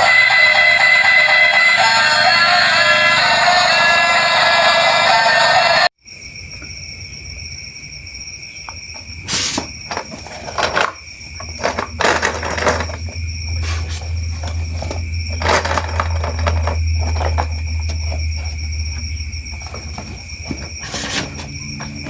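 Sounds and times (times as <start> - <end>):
high-pitched whine: 0.0 - 5.9, 11.8 - 22.0
plastic parts clicking and rustling: 9.5 - 18.5
low hum: 11.8 - 20.8.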